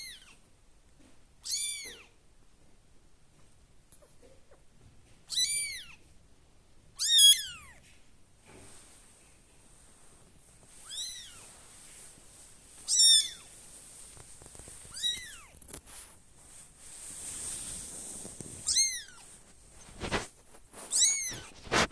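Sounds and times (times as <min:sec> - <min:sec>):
kitten mewing: 0:12.9 - 0:13.5, 0:14.9 - 0:15.7, 0:18.6 - 0:19.2, 0:20.9 - 0:21.6.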